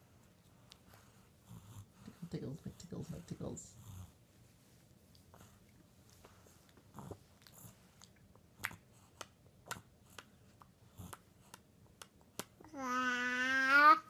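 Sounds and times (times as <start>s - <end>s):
baby mouth clicks and smacks: 6.6s - 12.6s
baby high-pitched vocal sound: 12.6s - 14.0s.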